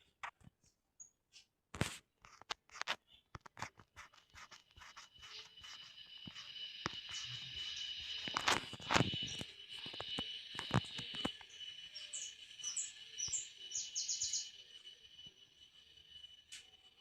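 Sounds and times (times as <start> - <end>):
birds chirping: 4.1 - 17.0
steady high tone: 4.1 - 17.0.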